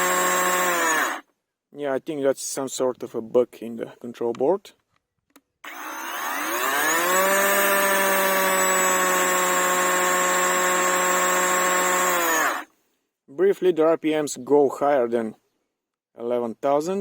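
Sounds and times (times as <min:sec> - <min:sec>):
electric chainsaw whining: 0:00.0 - 0:01.2, 0:05.6 - 0:12.7.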